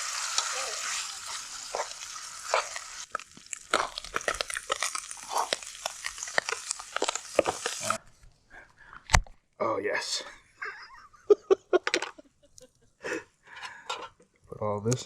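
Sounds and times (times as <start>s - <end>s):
food sizzling in a pot: 0.0s - 8.0s.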